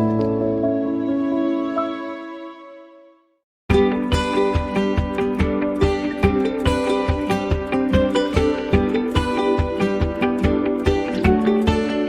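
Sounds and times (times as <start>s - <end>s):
plucked string music with beat: 3.7s - 12.0s.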